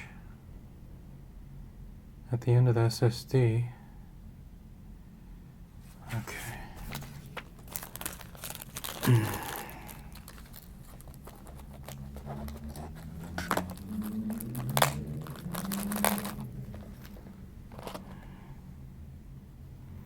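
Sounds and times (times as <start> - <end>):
hands handling plastic parts: 5.9 - 18.4.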